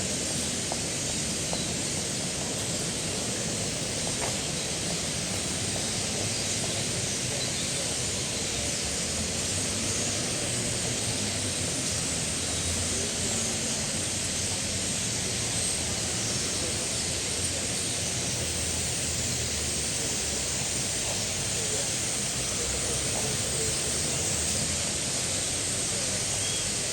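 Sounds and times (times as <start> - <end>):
flock of starlings chattering: 15.3 - 24.6.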